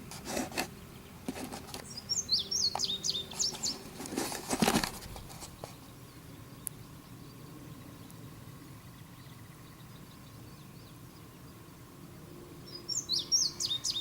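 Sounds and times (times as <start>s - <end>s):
faint steady hum: 0.0s - 14.0s
small bird chirping: 0.7s - 3.9s, 12.6s - 14.0s
rustling bumps: 3.3s - 5.8s.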